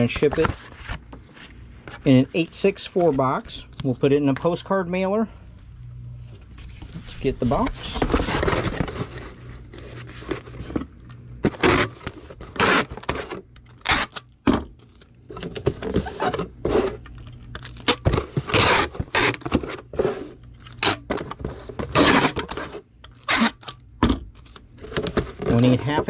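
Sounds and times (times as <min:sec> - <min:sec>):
cardboard and paper rustling: 0:00.0 - 0:04.0, 0:06.3 - 0:13.4, 0:24.4 - 0:26.0.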